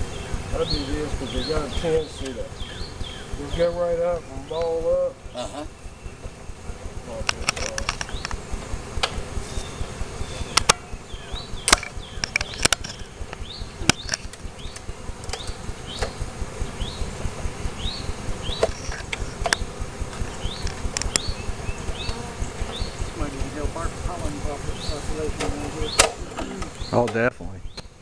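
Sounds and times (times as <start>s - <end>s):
bees buzzing: 0.0s - 28.0s
sharp clicks: 7.2s - 9.2s, 10.5s - 16.4s, 18.2s - 23.2s, 25.4s - 28.0s
high rising chirps: 8.0s - 26.0s.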